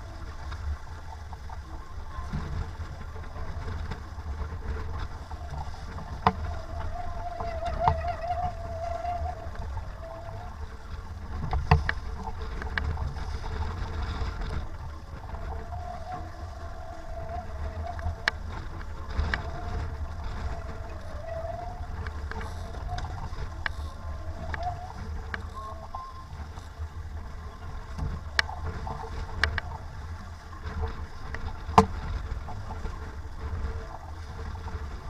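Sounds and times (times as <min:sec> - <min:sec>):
strong wind buffeting microphone: 0:00.0 - 0:35.0
wavering whistle: 0:06.4 - 0:10.6, 0:20.5 - 0:26.6.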